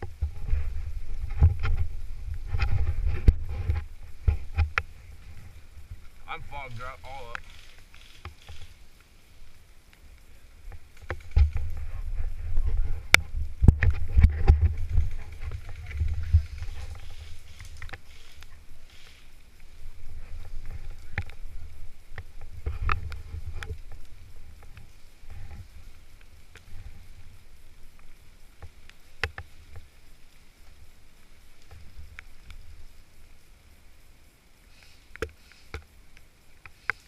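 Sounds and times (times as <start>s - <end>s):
microphone handling rumble: 0.0s - 7.5s, 10.6s - 19.0s, 19.6s - 30.0s
sharp clicks: 6.8s - 9.1s, 13.1s - 19.7s.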